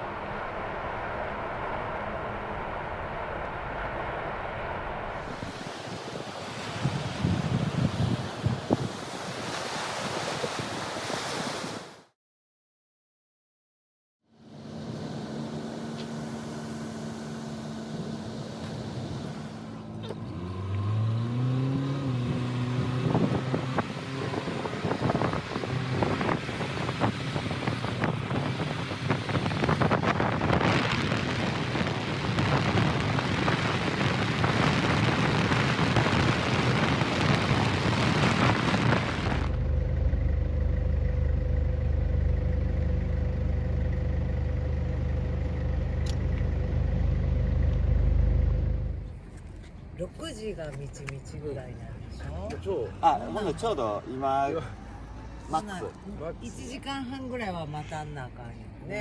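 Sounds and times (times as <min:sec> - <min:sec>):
low engine hum: 0:00.0 - 0:05.7, 0:14.3 - 0:53.8
loud rushing noise: 0:00.0 - 0:06.3
engine revving: 0:14.3 - 0:49.2.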